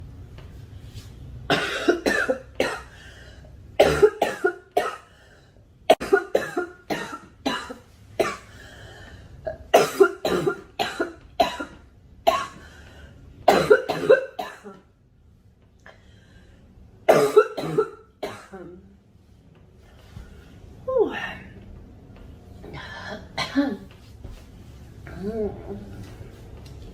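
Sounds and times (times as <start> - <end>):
girl coughing: 1.5 - 3.0, 3.8 - 5.1, 5.9 - 8.5, 9.7 - 12.6, 13.5 - 14.8, 17.1 - 18.8, 23.1 - 23.9.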